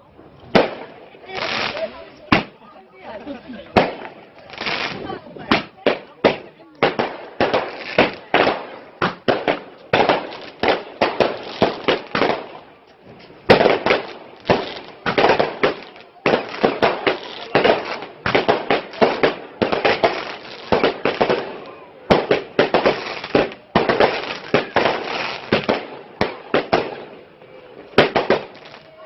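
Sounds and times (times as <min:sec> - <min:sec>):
fireworks bangs and crackles: 0:00.4 - 0:02.6, 0:03.3 - 0:29.0.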